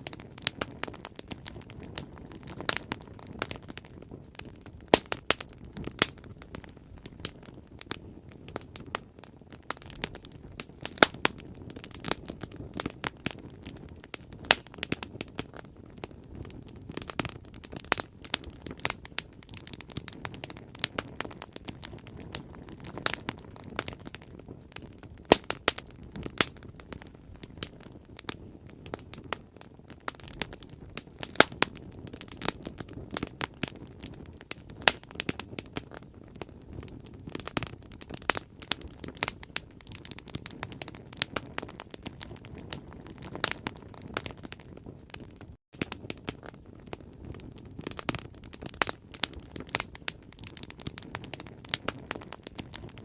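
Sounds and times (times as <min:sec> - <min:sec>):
bonfire rumbling: 0:00.0 - 0:53.0
burning wood snapping and popping: 0:00.0 - 0:53.0.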